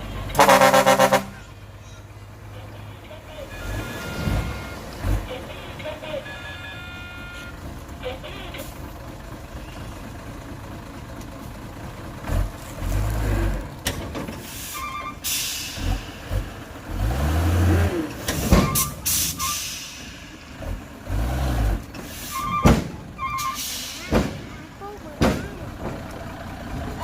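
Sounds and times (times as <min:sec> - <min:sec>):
diesel machinery engine rumble: 0:00.0 - 0:27.0
short beeping pips: 0:03.5 - 0:07.6.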